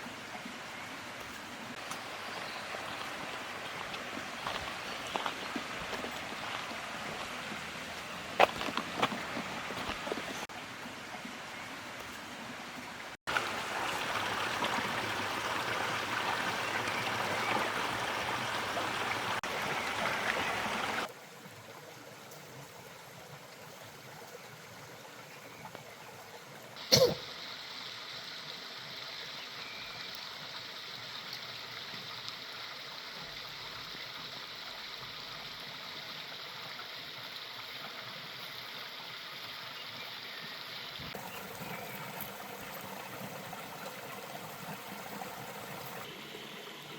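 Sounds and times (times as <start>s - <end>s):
stream water flowing: 0.0s - 46.9s.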